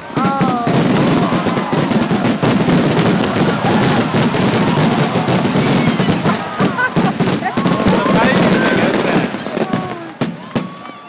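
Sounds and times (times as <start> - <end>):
fireworks crackling bangs: 0.0 - 11.0
firework whistles: 0.9 - 9.6.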